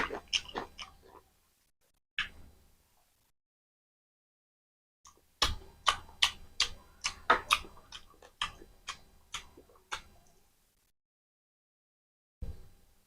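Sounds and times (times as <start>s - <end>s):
chewing crunchy food: 0.0s - 1.3s, 5.1s - 10.4s.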